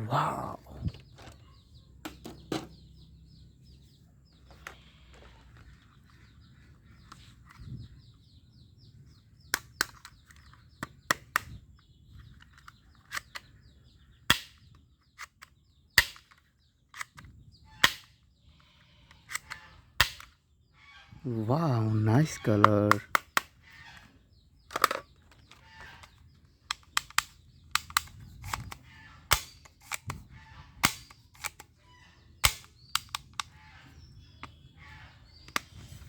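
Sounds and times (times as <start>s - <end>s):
plastic toy gun clicking: 9.5s - 11.6s, 14.3s - 18.3s, 19.1s - 20.4s, 22.6s - 23.6s, 24.6s - 31.8s, 32.4s - 33.6s.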